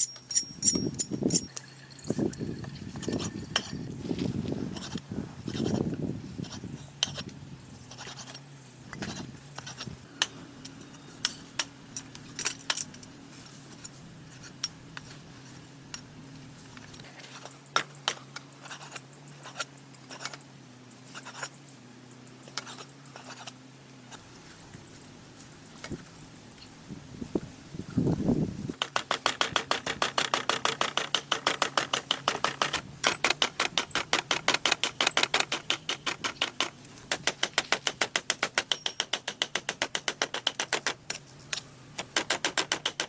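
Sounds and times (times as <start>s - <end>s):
sharp clicks and clinks: 0.0s - 3.8s
low steady hum: 0.0s - 42.5s
high-pitched chirping pulses: 17.3s - 23.5s, 24.5s - 26.8s, 27.7s - 28.3s.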